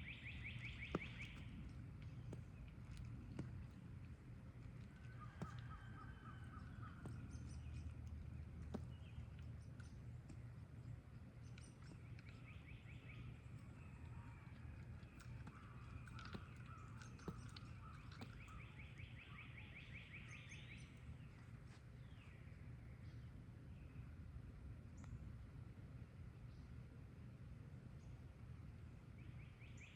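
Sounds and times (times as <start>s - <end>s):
low background rumble: 0.0s - 19.4s.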